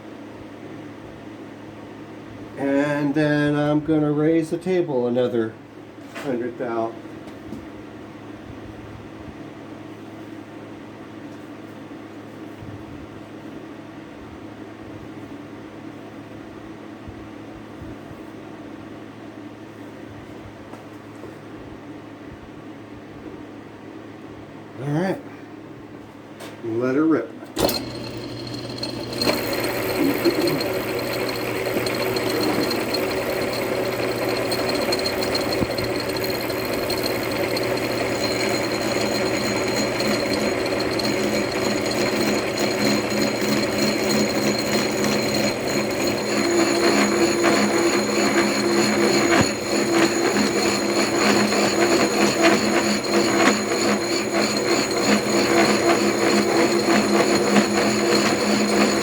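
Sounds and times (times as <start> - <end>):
gritty cutting sound: 27.6 - 59.0
milling machine motor whine: 27.6 - 59.0.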